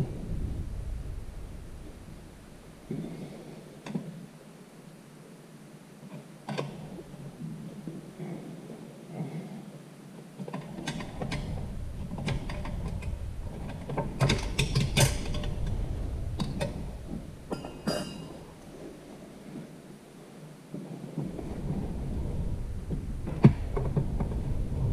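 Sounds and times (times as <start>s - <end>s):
low rumble: 0.0s - 3.7s, 11.0s - 19.4s, 21.2s - 24.9s.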